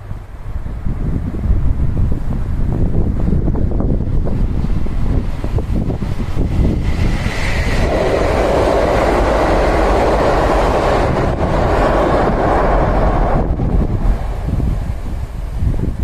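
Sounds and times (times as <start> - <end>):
wind buffeting microphone: 0.0 - 16.0
train passing: 4.4 - 16.0.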